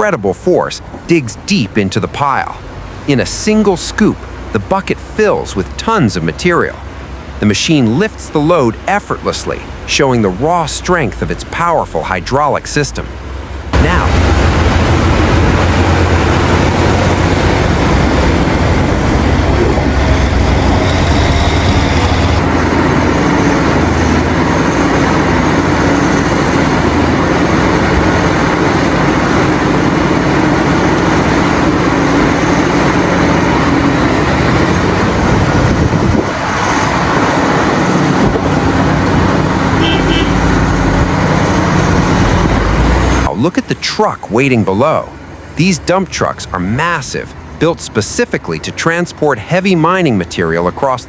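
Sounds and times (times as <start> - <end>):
hydraulic excavator running: 0.0 - 51.0.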